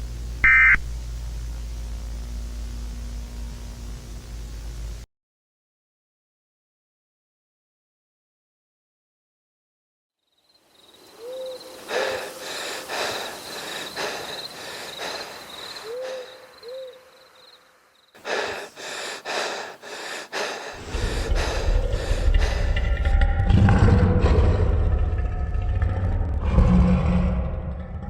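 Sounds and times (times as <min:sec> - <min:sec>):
warbling high insect trill: 0:10.4 - 0:19.0
owl hooting: 0:11.0 - 0:17.6
loud noisy strokes: 0:18.2 - 0:23.1
deep rumble: 0:20.8 - 0:28.0.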